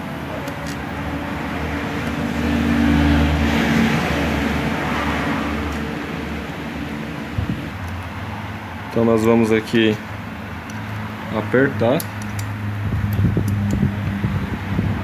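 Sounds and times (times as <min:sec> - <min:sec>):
vehicle passing by: 0:00.9 - 0:09.2, 0:12.4 - 0:15.0.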